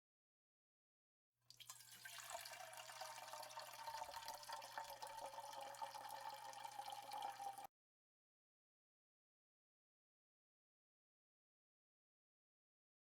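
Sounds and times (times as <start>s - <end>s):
liquid pouring into container: 1.5s - 7.7s.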